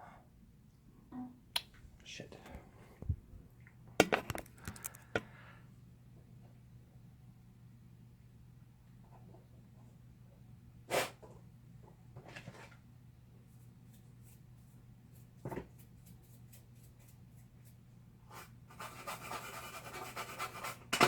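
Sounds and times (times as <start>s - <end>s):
low electrical hum: 0.0s - 18.3s.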